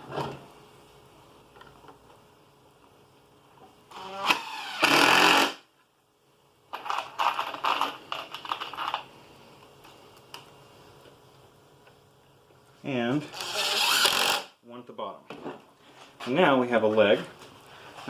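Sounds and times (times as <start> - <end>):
power drill whining: 3.9 - 5.5, 13.3 - 14.5.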